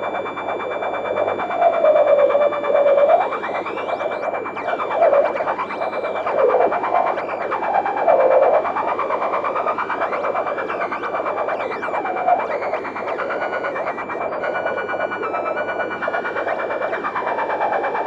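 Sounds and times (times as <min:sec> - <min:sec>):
dense crackling buzz: 0:00.0 - 0:17.1.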